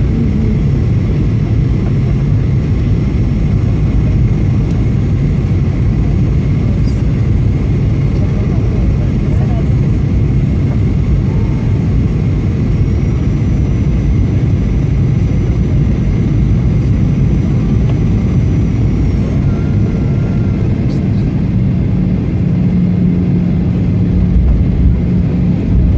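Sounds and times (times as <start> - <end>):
engine rumble and rushing air: 0.0 - 25.9
low hum: 0.0 - 25.9
faint high whine: 18.4 - 21.4.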